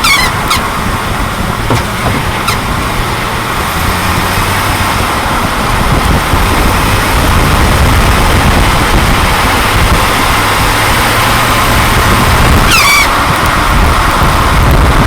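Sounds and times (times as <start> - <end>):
high-pitched falling squeaks: 0.0 - 0.7, 1.7 - 2.7, 12.6 - 13.2
engine and road noise: 0.0 - 15.0.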